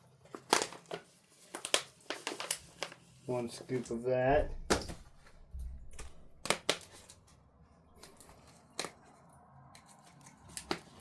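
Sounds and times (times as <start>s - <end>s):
tea scoop and containers clicking: 8.0s - 11.0s.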